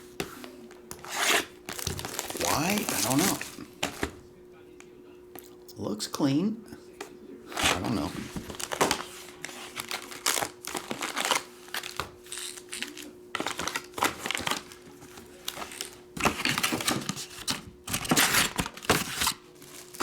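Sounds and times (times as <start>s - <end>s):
plastic wrap crackling: 1.6s - 4.2s, 7.6s - 17.4s, 18.0s - 20.0s.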